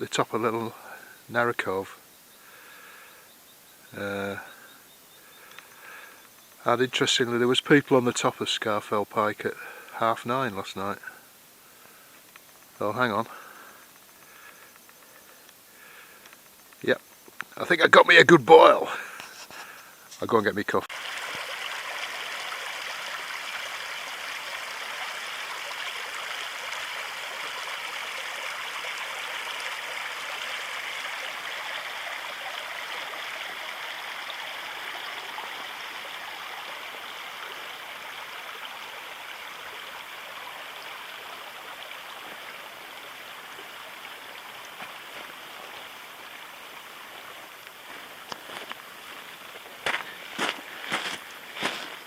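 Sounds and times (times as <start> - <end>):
mountain stream rushing: 20.8 - 52.0.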